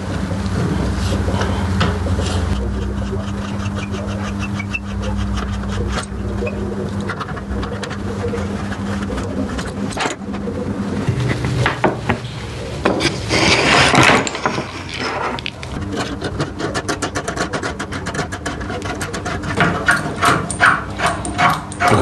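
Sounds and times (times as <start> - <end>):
clicks and knocks of tools: 19.1 - 22.0.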